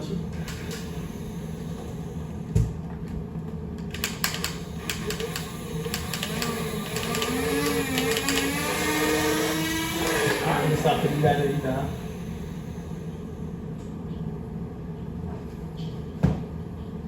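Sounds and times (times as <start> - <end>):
sharp mechanical clicks: 3.8 - 9.2
toy blaster motor humming: 4.0 - 12.7.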